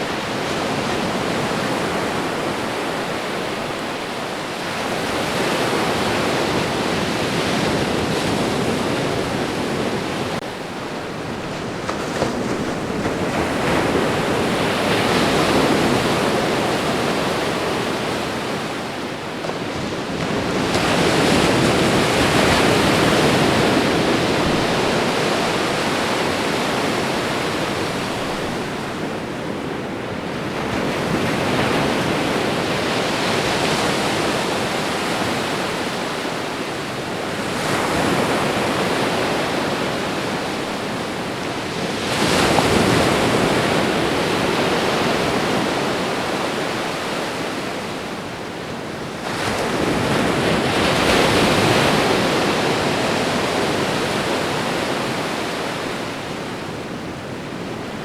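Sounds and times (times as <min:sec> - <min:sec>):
ocean waves breaking on shore: 0:00.0 - 0:58.0.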